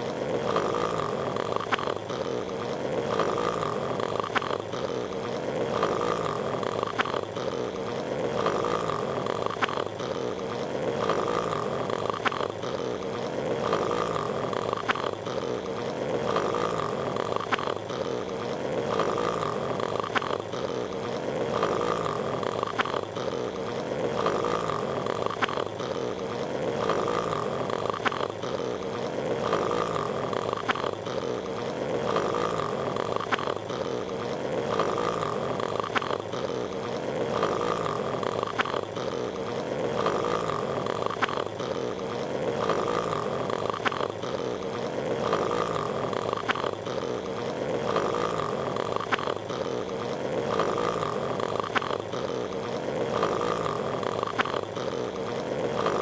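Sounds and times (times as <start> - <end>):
cartoon snoring: 0.0 - 56.0
sharp clicks: 1.5 - 2.1, 4.0 - 4.7, 6.7 - 7.3, 9.4 - 10.0, 12.0 - 12.7, 14.6 - 15.3, 17.2 - 18.0, 18.9 - 20.5, 21.6 - 23.1, 25.2 - 25.8, 26.8 - 28.6, 29.4 - 31.0, 32.1 - 33.8, 34.7 - 36.4, 37.4 - 39.0, 40.0 - 41.6, 42.6 - 44.4, 45.2 - 46.9, 47.9 - 49.4, 50.5 - 52.2, 53.2 - 54.7.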